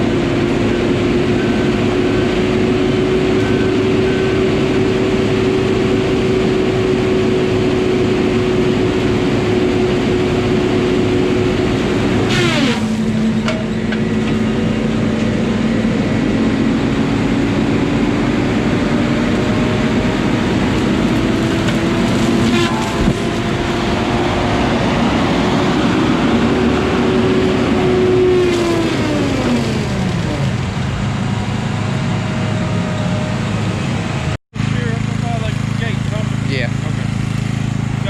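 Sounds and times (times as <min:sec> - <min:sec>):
engine running at high speed: 0:00.0 - 0:38.0
sharp crack: 0:20.2 - 0:24.2, 0:28.4 - 0:32.0.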